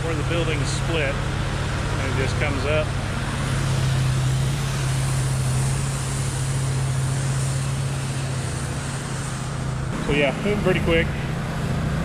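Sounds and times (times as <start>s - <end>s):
pressure washer engine hum: 0.0s - 12.0s
water spray hissing: 3.1s - 11.3s.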